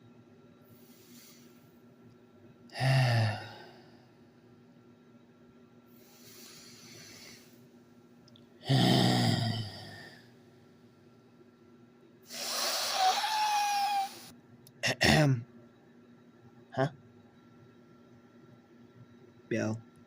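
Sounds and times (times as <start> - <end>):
long hissing exhale: 0.7 - 1.7, 5.9 - 7.6, 12.2 - 14.3
faint breath: 0.7 - 1.8, 5.9 - 7.6
person groaning sigh: 2.7 - 3.8, 8.6 - 10.2, 12.4 - 14.3.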